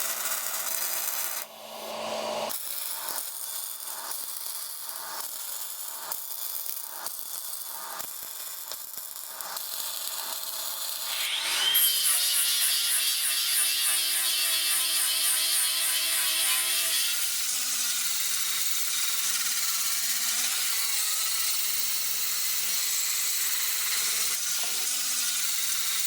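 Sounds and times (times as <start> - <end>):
small electric power tool whining: 10.2 - 26.0.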